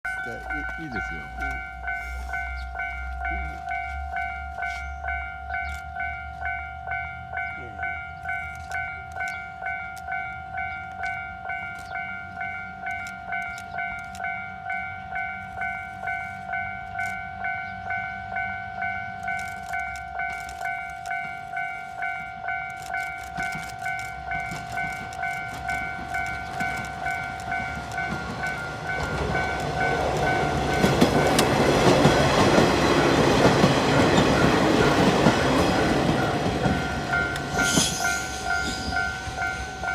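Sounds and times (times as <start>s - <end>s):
level crossing bell ringing: 0.1s - 19.2s, 33.8s - 39.9s
diesel railcar rumbling past: 23.8s - 39.9s.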